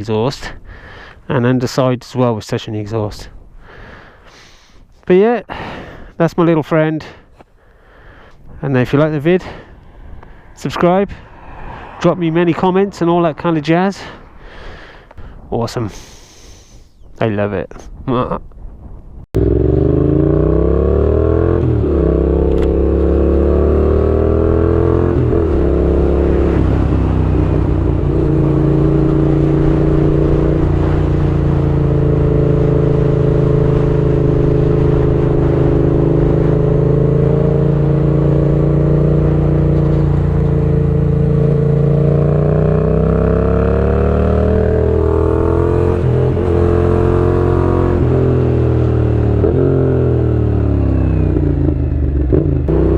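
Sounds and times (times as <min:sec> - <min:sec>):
loud motorcycle engine running: 0:50.5 - 0:52.9.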